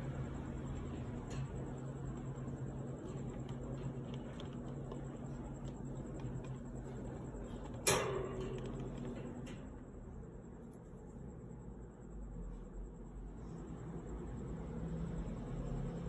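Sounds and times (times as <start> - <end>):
electric fan running: 0.0 - 12.1.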